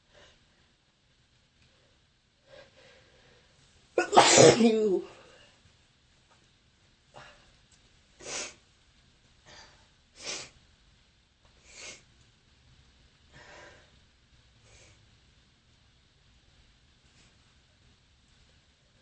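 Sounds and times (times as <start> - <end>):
person sneezing: 4.0 - 5.2.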